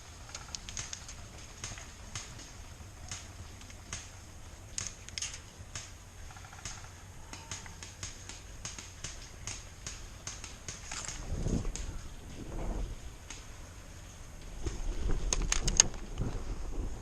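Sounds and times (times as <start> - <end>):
crunching footsteps: 0.0 - 13.7
wind rumble on microphone: 10.8 - 17.0.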